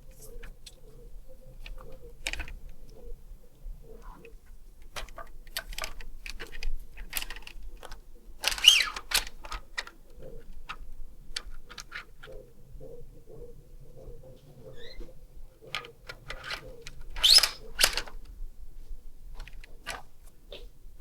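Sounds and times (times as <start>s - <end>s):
rifle mechanism clicks and rattles: 1.6s - 3.0s, 4.8s - 12.4s, 15.6s - 18.4s, 19.3s - 20.1s
plastic scraping slide: 5.8s - 9.9s, 15.8s - 18.2s.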